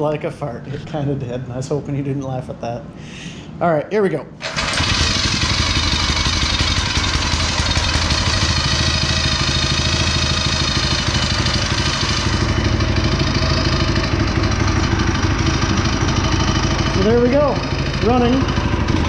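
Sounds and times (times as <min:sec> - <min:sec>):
small engine running: 0:04.4 - 0:19.0.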